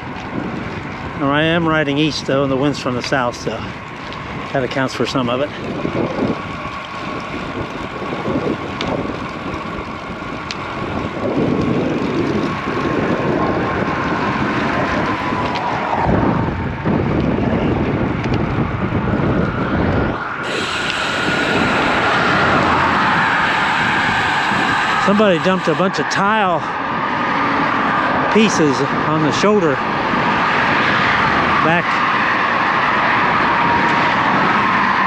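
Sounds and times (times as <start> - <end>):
road noise: 0.0 - 35.0
wind buffeting microphone: 0.0 - 35.0
faint steady whine: 20.1 - 26.8.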